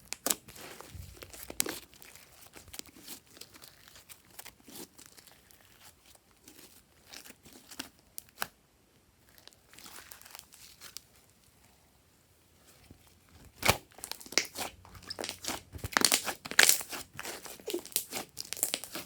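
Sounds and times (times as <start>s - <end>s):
slime squished by hand: 13.5s - 19.0s.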